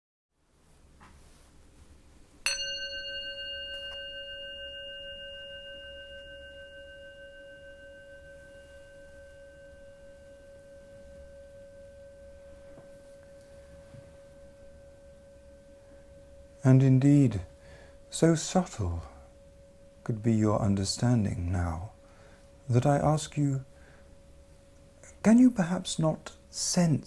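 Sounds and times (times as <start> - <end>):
bell ringing: 2.5 - 16.9.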